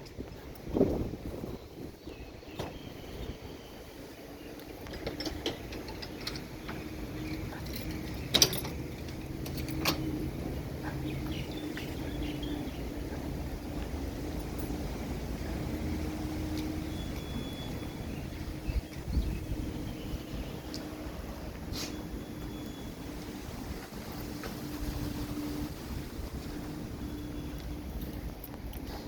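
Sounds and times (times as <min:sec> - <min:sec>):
engine humming: 0:00.0 - 0:29.0
sharp clicks and knocks: 0:04.6 - 0:10.2.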